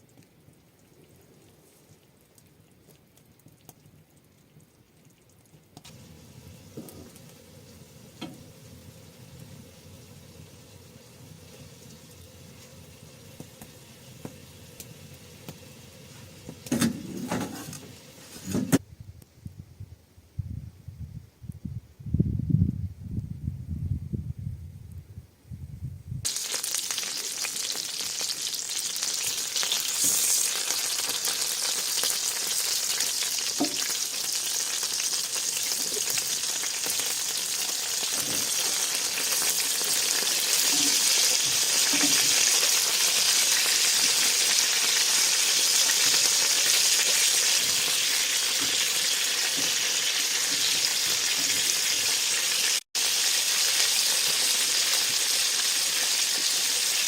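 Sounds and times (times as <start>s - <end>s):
food sizzling in a pan: 5.8s - 18.8s, 26.2s - 57.0s.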